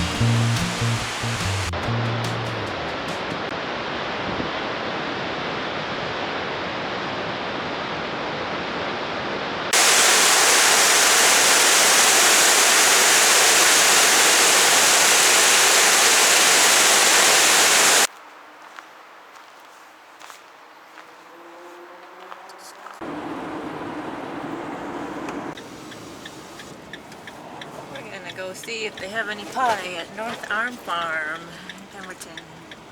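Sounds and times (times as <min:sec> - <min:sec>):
waterfall roaring: 0:00.0 - 0:01.7, 0:09.8 - 0:18.1.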